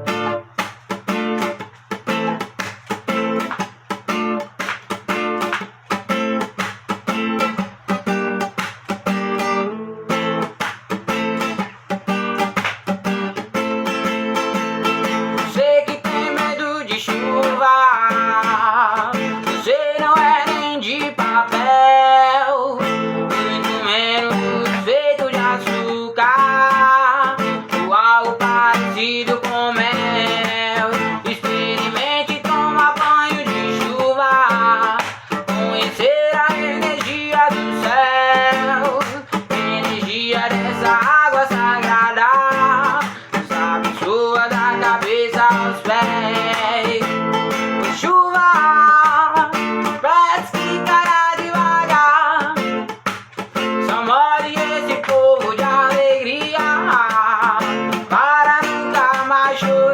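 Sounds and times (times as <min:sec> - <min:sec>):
strummed acoustic guitar: 0:00.0 - 0:59.9.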